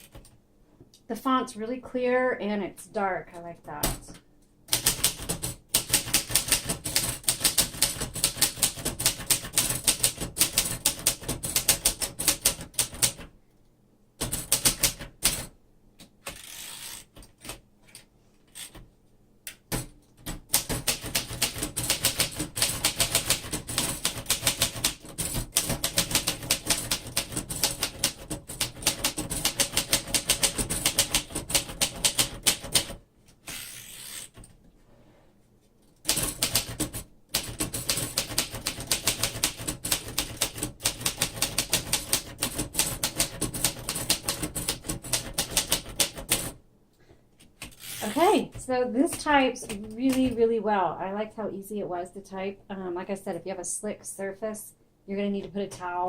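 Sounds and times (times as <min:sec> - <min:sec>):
manual typewriter keys clacking: 0:04.7 - 0:13.3, 0:14.2 - 0:15.5, 0:19.6 - 0:33.0, 0:36.0 - 0:46.6.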